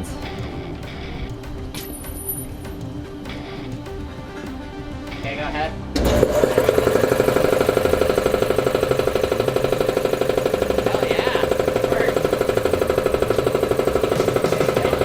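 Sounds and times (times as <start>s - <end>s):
electric motor hum: 0.0s - 15.0s
air compressor pump chugging: 5.1s - 15.0s.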